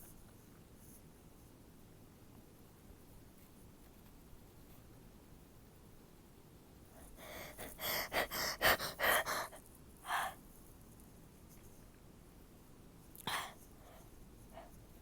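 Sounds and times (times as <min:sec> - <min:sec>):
gasping in-breaths: 0:07.0 - 0:10.4, 0:13.3 - 0:14.7.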